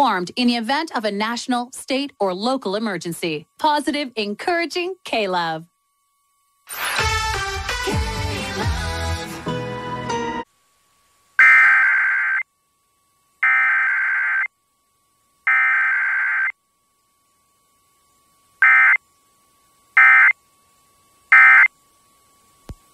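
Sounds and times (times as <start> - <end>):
warbling digital data bursts: 11.4 - 12.5, 13.4 - 14.5, 15.4 - 16.6, 18.6 - 19.0, 20.0 - 20.4, 21.3 - 21.7.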